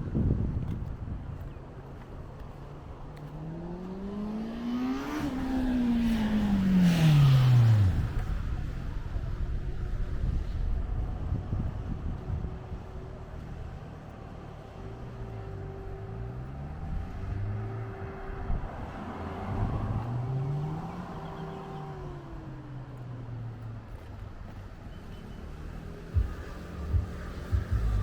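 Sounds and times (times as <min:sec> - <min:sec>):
motor engine revving: 0:03.4 - 0:08.6, 0:25.5 - 0:28.0.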